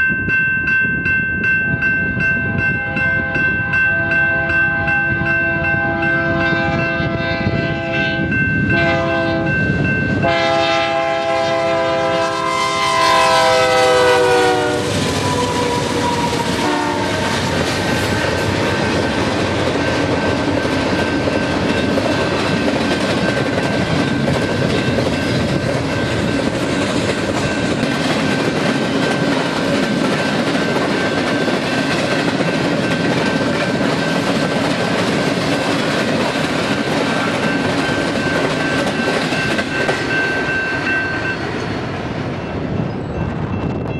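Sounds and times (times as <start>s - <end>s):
locomotive air horn blasts: 2.8s - 9.6s, 10.2s - 17.5s
train wheels clattering on rails: 8.6s - 43.9s.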